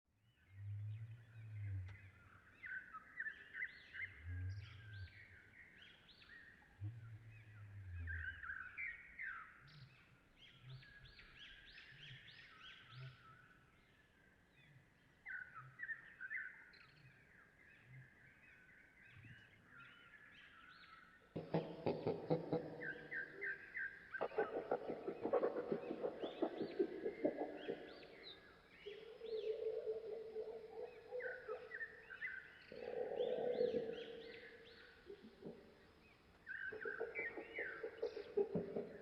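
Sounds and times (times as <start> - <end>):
birds chirping: 19.3 - 39.0.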